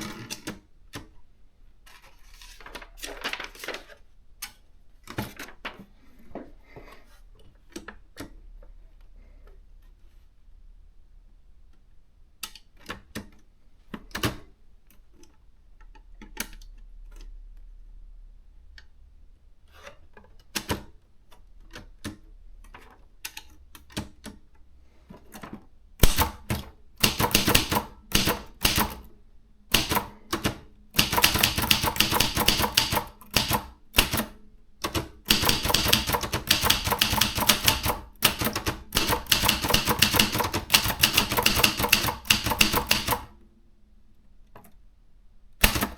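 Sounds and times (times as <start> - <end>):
manual typewriter typing: 0.0 - 0.6, 2.5 - 3.9, 26.0 - 29.1, 29.7 - 43.4, 45.6 - 45.9.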